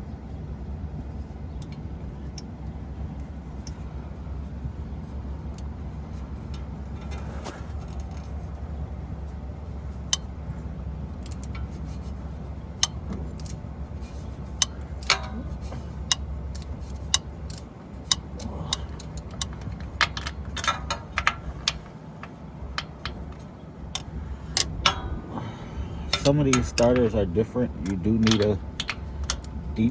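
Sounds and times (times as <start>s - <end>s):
steady low hum: 0.0s - 29.9s
metal hand tools clinking: 27.8s - 29.9s.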